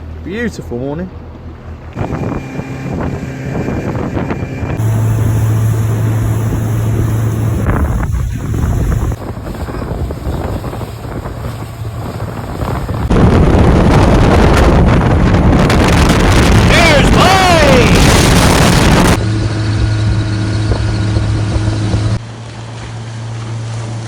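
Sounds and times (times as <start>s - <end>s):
motorboat engine running: 0.0s - 24.0s
wind buffeting microphone: 1.9s - 22.2s.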